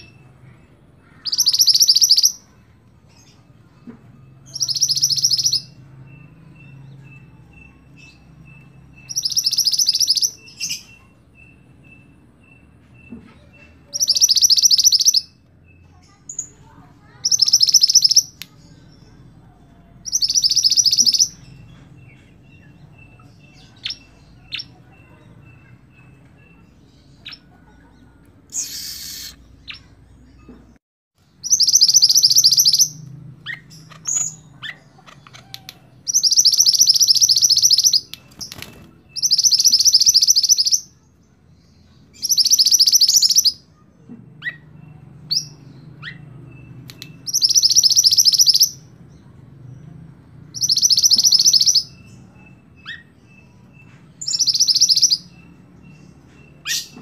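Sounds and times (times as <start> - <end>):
short bird chirps: 28.5 - 29.9.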